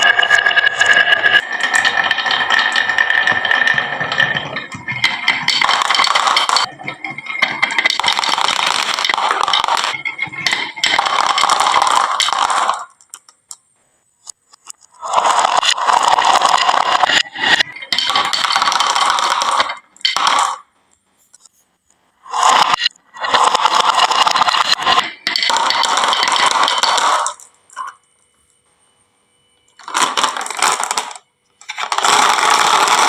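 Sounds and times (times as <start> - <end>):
marbles clattering down wooden run: 0.0 - 13.2, 15.0 - 20.6, 22.4 - 28.0, 29.8 - 33.0.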